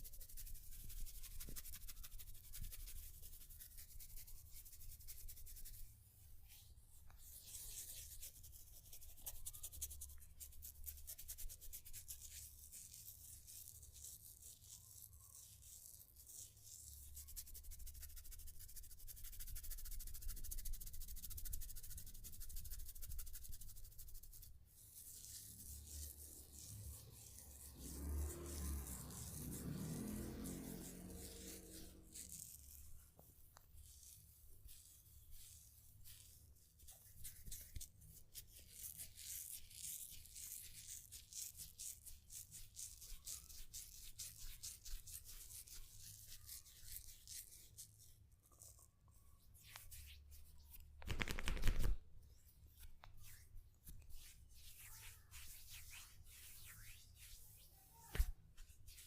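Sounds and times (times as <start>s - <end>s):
hands rustling through hair: 49.6s - 52.0s, 52.7s - 59.0s.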